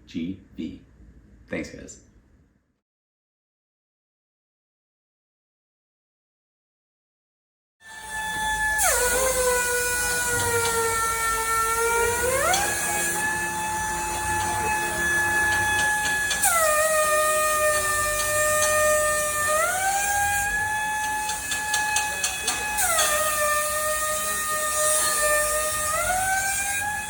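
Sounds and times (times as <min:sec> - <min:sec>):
pneumatic angle grinder whining: 0:07.8 - 0:27.0
air hissing: 0:08.0 - 0:27.0.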